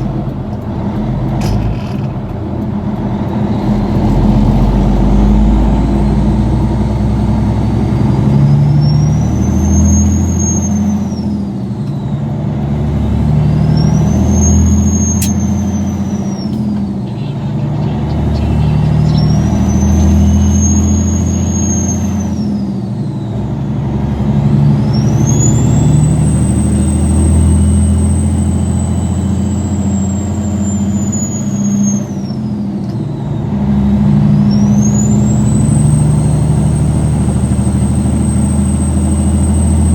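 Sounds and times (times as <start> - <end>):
diesel engine revving: 0.0 - 39.9
turbocharger whistle: 7.6 - 12.2, 13.0 - 23.7, 24.7 - 39.9.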